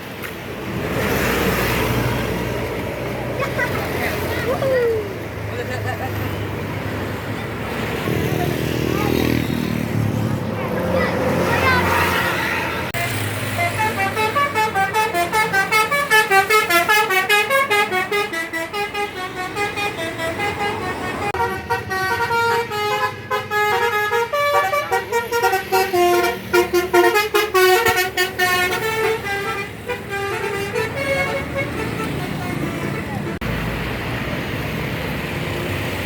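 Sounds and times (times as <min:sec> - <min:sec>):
bus horn playing a fast tune: 0:11.9 - 0:33.4.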